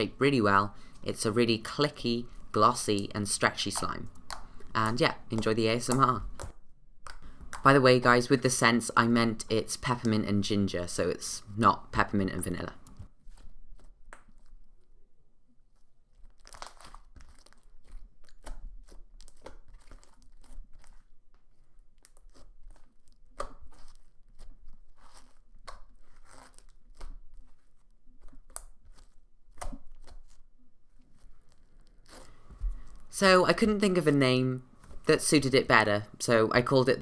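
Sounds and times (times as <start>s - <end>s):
slime squelching and popping: 1.7s - 7.8s, 16.1s - 33.2s.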